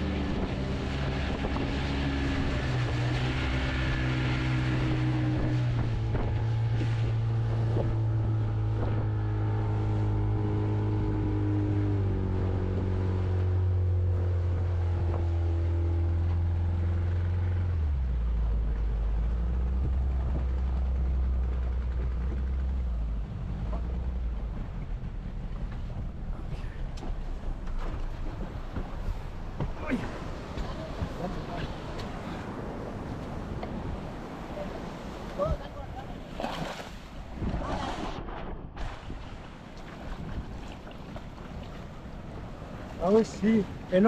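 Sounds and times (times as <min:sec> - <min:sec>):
boat motor running: 0:00.0 - 0:44.0.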